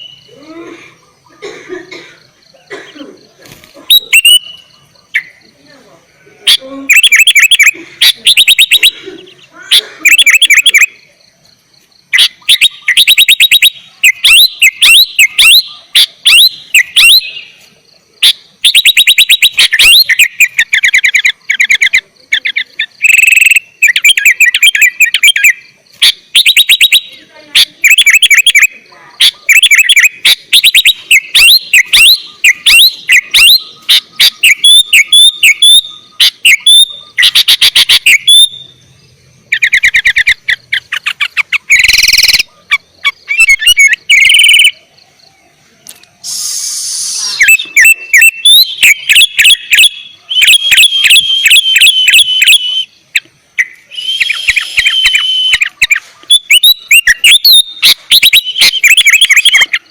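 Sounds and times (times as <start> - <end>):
bird chirping song: 0.0 - 59.9.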